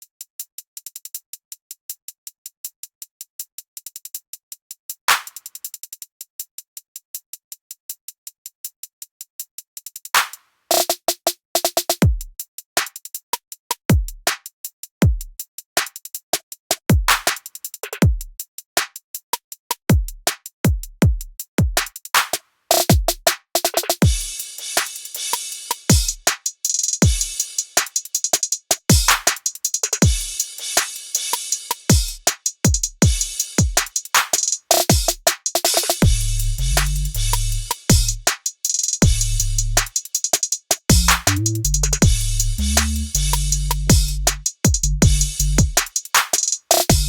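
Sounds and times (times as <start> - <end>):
fast hi-hat ticks: 0.0 - 47.0
deep booming kick drums: 12.0 - 12.3, 24.0 - 24.3, 30.0 - 30.3, 36.0 - 38.3, 39.0 - 39.9, 40.9 - 45.8.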